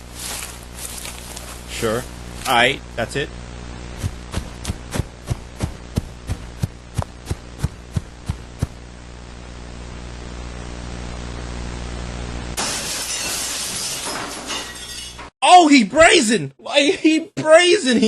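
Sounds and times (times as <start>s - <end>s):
electrical hum and static: 0.0s - 12.6s
window glass shattering: 12.6s - 15.3s.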